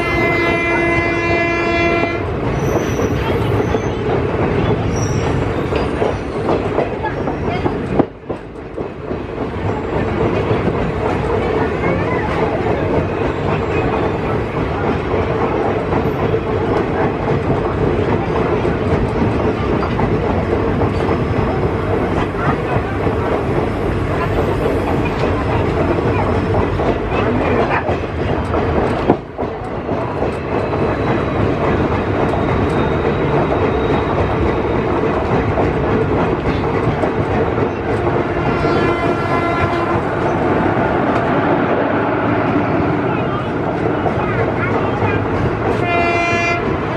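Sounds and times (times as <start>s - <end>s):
train rumbling past: 0.0s - 46.9s
wheels clacking over rail joints: 0.1s - 46.9s.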